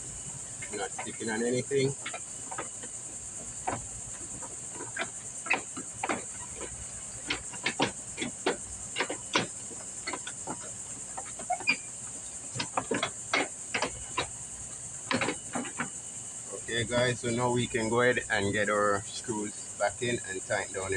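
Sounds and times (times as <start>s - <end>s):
mower parts clicking and knocking: 0.0s - 16.1s
crickets chirring: 0.0s - 20.9s.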